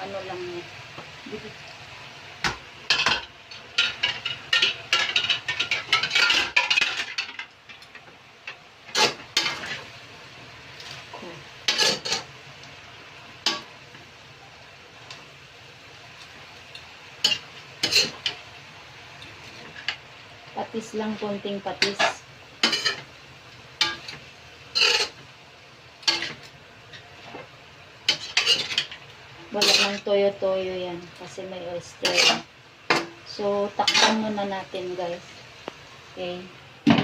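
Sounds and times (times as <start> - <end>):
utensil scraping a pan: 23.8 - 25.2, 28.1 - 30.1, 32.0 - 32.5.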